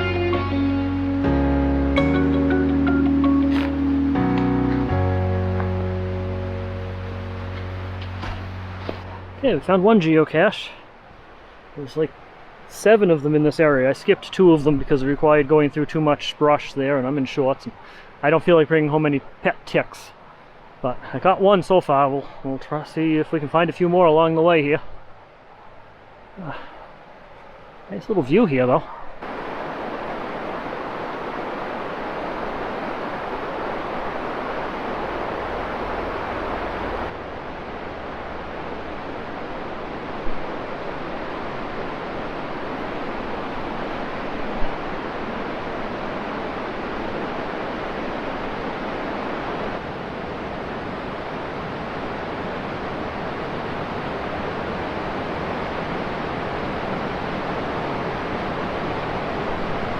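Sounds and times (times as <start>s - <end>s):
waterfall rushing: 0.0s - 13.6s, 29.2s - 59.9s.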